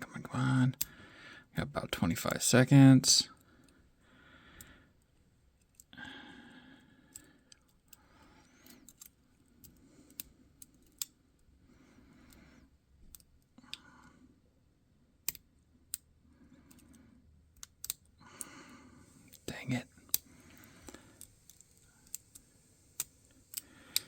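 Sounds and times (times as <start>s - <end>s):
lock pick metallic clicks: 16.7s - 18.1s.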